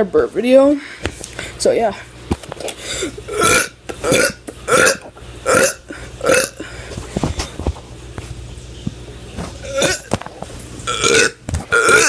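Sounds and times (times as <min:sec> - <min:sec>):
person burping: 0:02.9 - 0:06.6, 0:09.6 - 0:10.1, 0:10.9 - 0:12.0.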